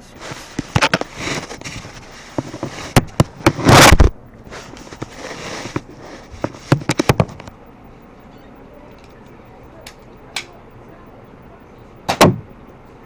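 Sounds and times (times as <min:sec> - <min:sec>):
toy dart pistol firing burst: 0:12.1 - 0:12.5.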